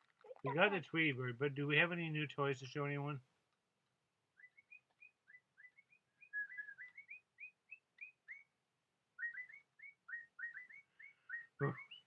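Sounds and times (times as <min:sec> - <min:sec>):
electronic toy bird chirping: 0:09.2 - 0:12.0.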